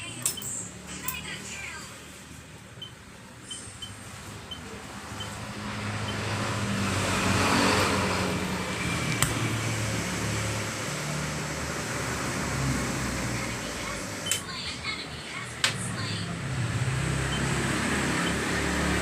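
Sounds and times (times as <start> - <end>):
vehicle engine running: 0.0 - 19.0.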